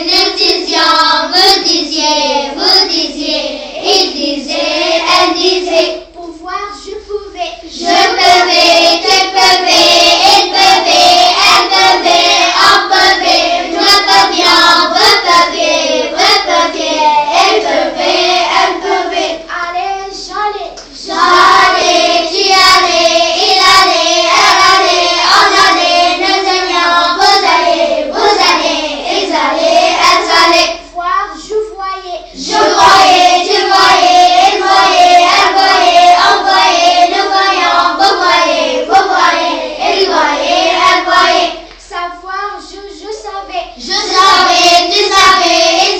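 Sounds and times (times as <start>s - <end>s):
child singing: 0.0s - 45.9s.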